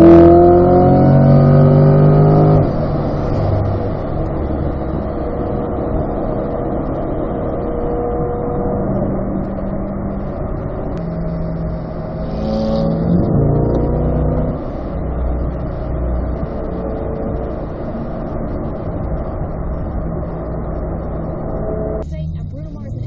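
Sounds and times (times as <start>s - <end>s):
sports car engine accelerating: 0.0s - 23.0s.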